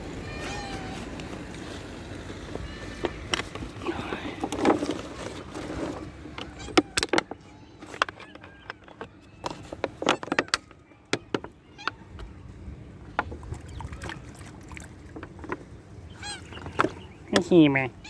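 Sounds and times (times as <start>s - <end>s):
low steady background noise: 0.0s - 18.0s
sharp clicks and light knocks: 2.3s - 12.3s.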